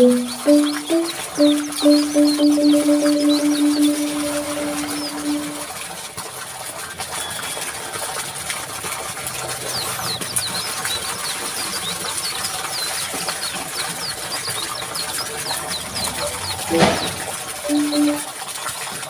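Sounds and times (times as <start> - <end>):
bird chirping: 0.0 - 5.6
rushing water: 0.0 - 19.0.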